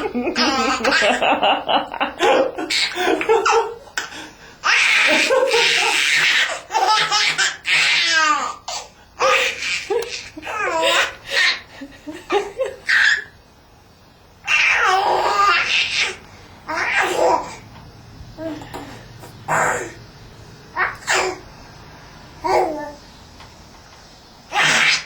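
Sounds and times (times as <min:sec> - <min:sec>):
baby laughing: 0:00.0 - 0:13.3, 0:14.5 - 0:17.6, 0:24.5 - 0:25.0.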